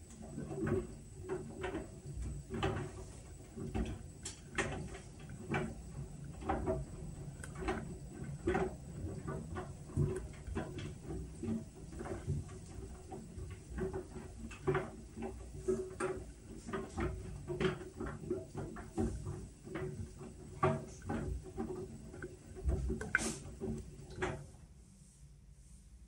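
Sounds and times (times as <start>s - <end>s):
washing machine motor hum: 0.0s - 26.0s.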